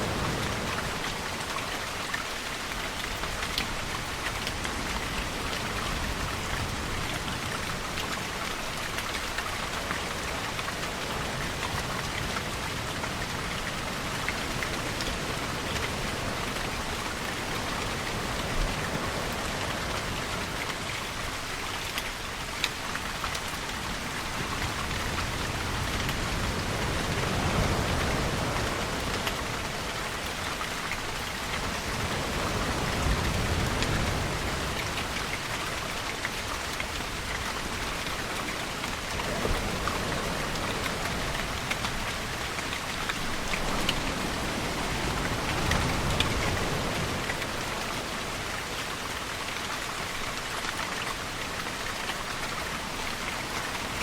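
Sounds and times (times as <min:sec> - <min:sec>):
ocean waves: 0:00.0 - 0:54.0
rain pattering: 0:00.0 - 0:54.0.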